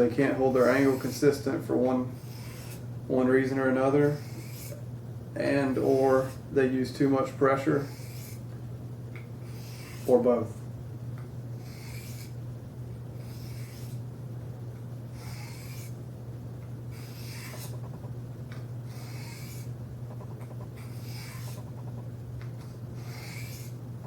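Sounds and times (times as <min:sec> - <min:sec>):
steady low hum: 0:00.0 - 0:24.0
knife rasping on diamond sharpener: 0:00.5 - 0:01.3, 0:02.2 - 0:02.8, 0:04.2 - 0:04.8, 0:07.8 - 0:08.4, 0:09.5 - 0:10.2, 0:11.6 - 0:12.4, 0:13.2 - 0:14.0, 0:15.2 - 0:16.0, 0:16.9 - 0:18.1, 0:18.9 - 0:22.0, 0:23.0 - 0:23.8.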